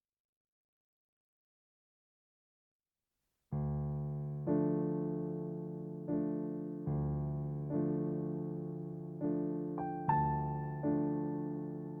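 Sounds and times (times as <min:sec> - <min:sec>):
soft electric piano chords: 0:03.6 - 0:12.0.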